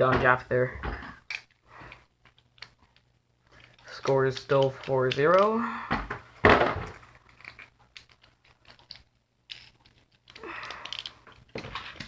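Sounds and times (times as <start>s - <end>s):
plastic spinning tops rattling: 6.9s - 12.0s.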